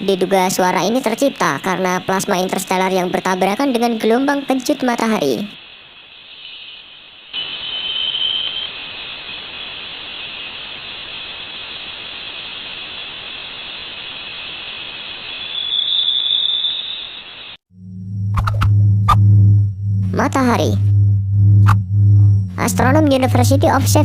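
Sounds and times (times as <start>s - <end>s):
high hiss with whistling tone: 1.6s - 17.6s.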